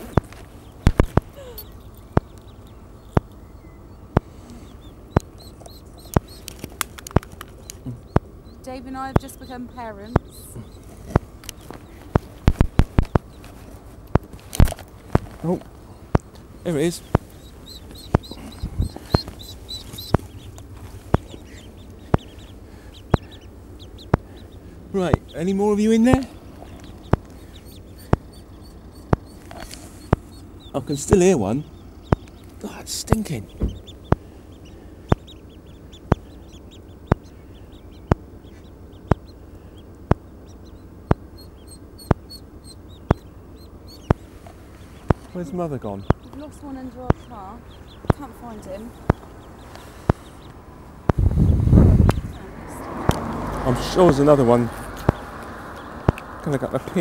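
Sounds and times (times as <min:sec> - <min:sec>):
sharp clicks: 0:00.0 - 0:31.2, 0:32.0 - 0:38.3, 0:39.0 - 0:45.4, 0:46.0 - 0:51.2, 0:52.9 - 0:53.6, 0:54.9 - 0:56.4
ducklings peeping: 0:00.0 - 0:57.0
loud sharp clicks: 0:05.1 - 0:08.3, 0:29.0 - 0:30.3, 0:53.0 - 0:53.6, 0:54.9 - 0:56.4.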